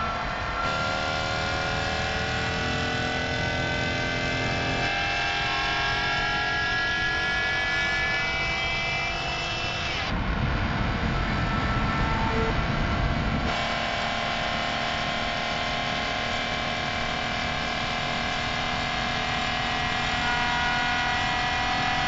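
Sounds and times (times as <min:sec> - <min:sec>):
car engine wailing in tunnel: 0:00.0 - 0:22.0.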